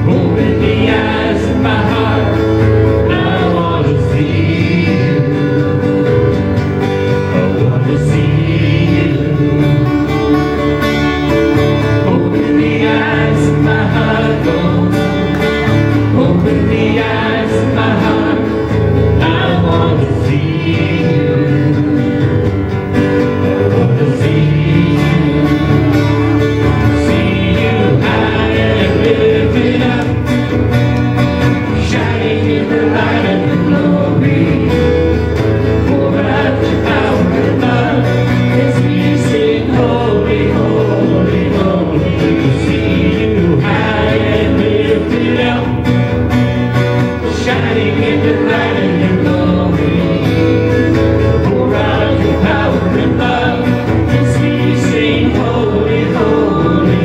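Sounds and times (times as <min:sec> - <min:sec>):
person singing: 0:00.0 - 0:10.7, 0:11.6 - 0:30.4, 0:47.2 - 0:57.0
worship band playing: 0:00.0 - 0:57.0.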